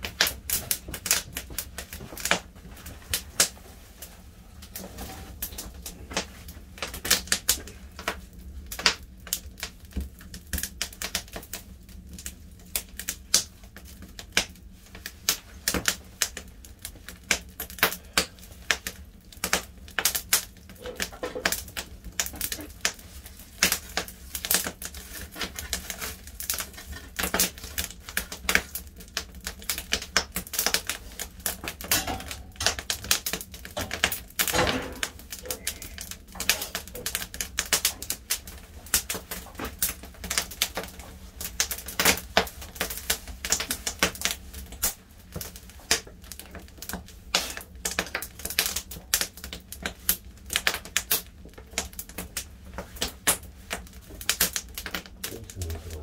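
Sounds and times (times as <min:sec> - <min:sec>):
firewood crackling and popping: 0:00.0 - 0:56.0
low steady rumble: 0:55.3 - 0:56.0.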